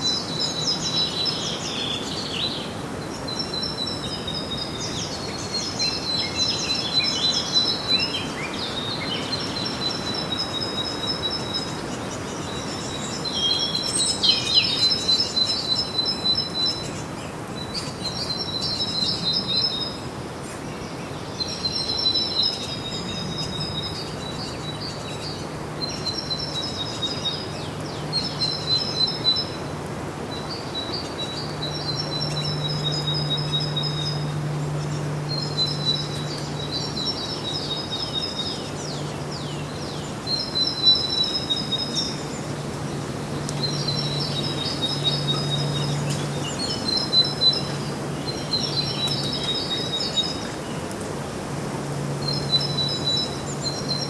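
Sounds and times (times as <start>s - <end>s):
songbird singing: 0.0s - 54.0s
low steady hum: 20.8s - 54.0s.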